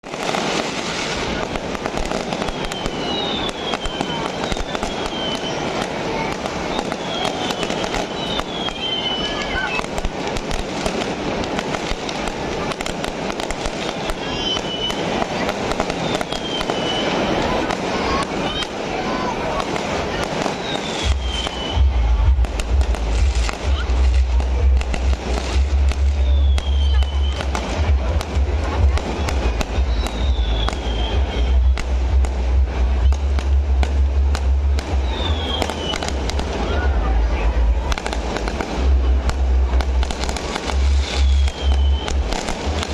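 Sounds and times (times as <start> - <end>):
high firework whistle: 0.0 - 11.0, 11.8 - 22.0, 25.1 - 27.7, 29.2 - 32.1, 34.8 - 36.8, 40.2 - 42.9
fireworks crackling and banging: 0.0 - 42.9
steady rumble: 21.1 - 42.9.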